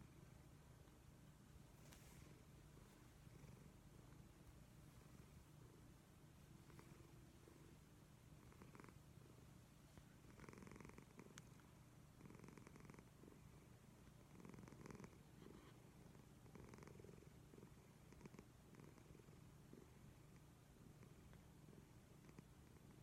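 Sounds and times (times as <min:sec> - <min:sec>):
cat snoring: 0:10.3 - 0:11.2, 0:12.2 - 0:13.1, 0:16.5 - 0:19.8.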